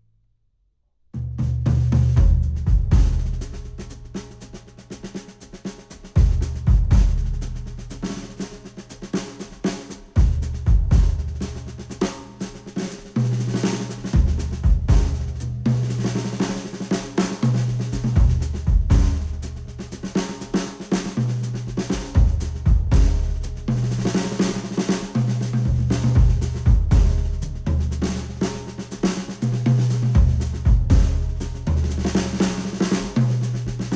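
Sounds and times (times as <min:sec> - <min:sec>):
snare and kick drum beat: 0:01.2 - 0:33.9
deep bass line: 0:01.4 - 0:04.2, 0:06.2 - 0:08.0, 0:10.2 - 0:11.8, 0:13.9 - 0:16.0, 0:17.5 - 0:20.0, 0:21.3 - 0:24.3, 0:25.3 - 0:28.5, 0:29.4 - 0:32.5, 0:33.3 - 0:33.9.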